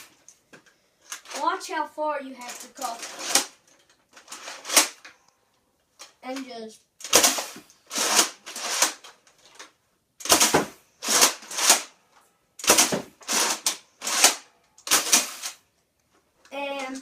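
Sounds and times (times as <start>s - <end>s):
toy blaster being cocked: 4.3s - 5.1s, 7.0s - 9.1s, 10.2s - 11.9s, 12.6s - 15.6s.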